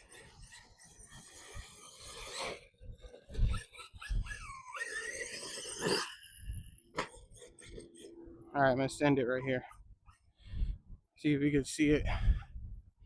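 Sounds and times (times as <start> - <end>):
electric motor whine: 0.0 - 8.6.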